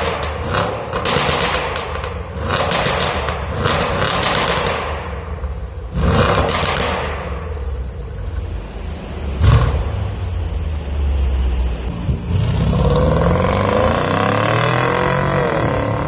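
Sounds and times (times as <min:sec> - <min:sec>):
exhaust crackling and popping: 0:00.0 - 0:08.6
engine low rumble: 0:04.8 - 0:14.4.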